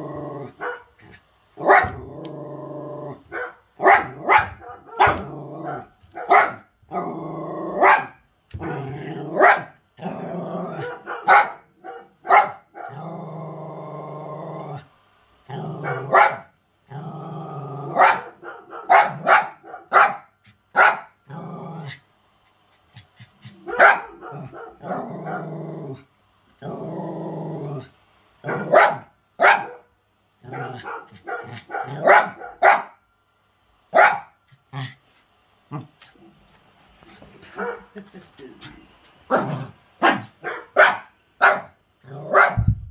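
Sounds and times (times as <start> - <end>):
dog growling: 0.0 - 3.3, 4.1 - 6.0, 6.9 - 7.9, 8.6 - 11.1, 12.7 - 16.3, 16.9 - 19.3, 21.2 - 22.1, 22.9 - 28.8, 35.7 - 40.5, 42.0 - 42.6
dog barking sharply: 0.6 - 0.9, 1.6 - 2.0, 3.3 - 6.7, 7.8 - 8.8, 9.4 - 9.8, 10.8 - 13.0, 15.8 - 16.5, 18.0 - 21.2, 23.6 - 25.5, 28.4 - 29.9, 30.5 - 33.0, 33.9 - 34.4, 40.0 - 41.7, 42.3 - 42.6.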